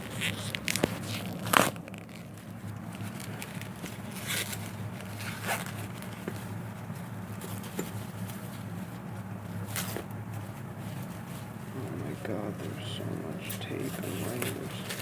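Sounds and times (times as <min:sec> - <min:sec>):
packing tape ripping: 0:00.0 - 0:06.4
steady low hum: 0:00.0 - 0:15.0
wrapping rustling: 0:00.0 - 0:15.0.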